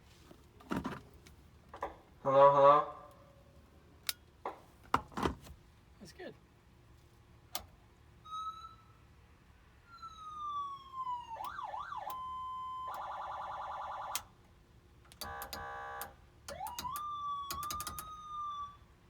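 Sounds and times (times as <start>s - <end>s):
electronic police siren: 8.2s - 9.1s, 9.8s - 14.4s, 15.2s - 19.0s
switch clicks: 15.1s - 18.2s
buzzing horn blasts: 15.2s - 16.2s.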